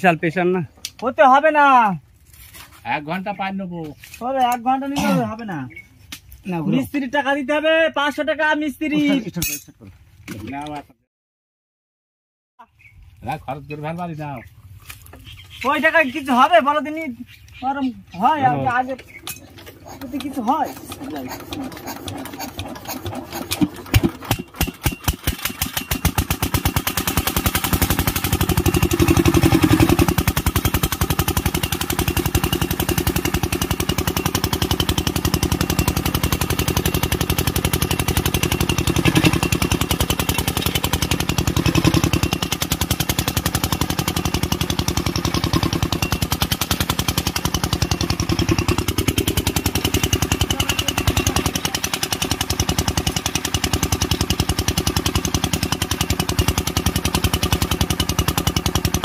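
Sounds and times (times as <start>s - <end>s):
diesel engine knocking: 19.1s - 59.0s.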